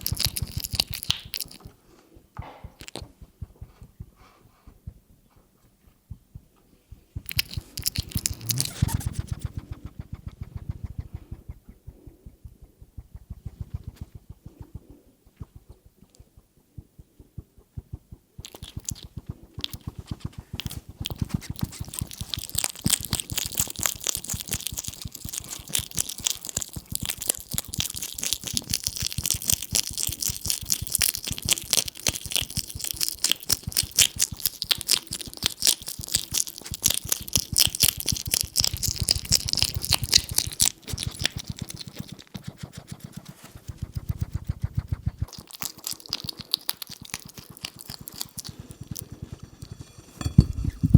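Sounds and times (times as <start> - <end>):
hedgehog chewing: 0.0 - 4.5, 7.2 - 12.2, 18.2 - 50.9
low rumble: 7.2 - 14.4, 49.2 - 50.9.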